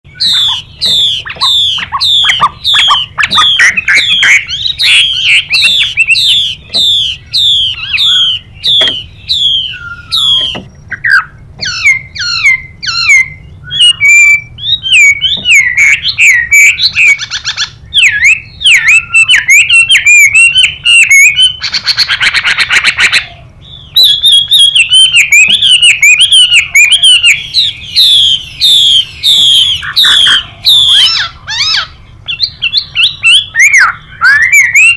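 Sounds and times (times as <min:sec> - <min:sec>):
bird whistling song: 0:00.1 - 0:34.9.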